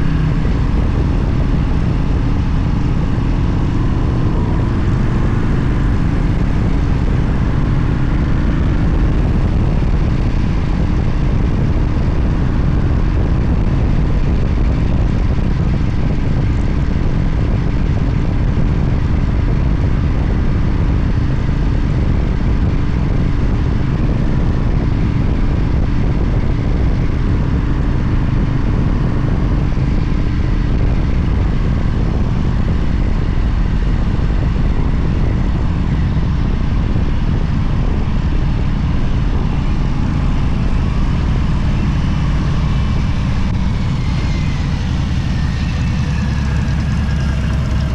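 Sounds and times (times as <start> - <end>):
motorcycle engine drone: 0.0 - 47.9
wind rush on microphone: 0.0 - 47.9.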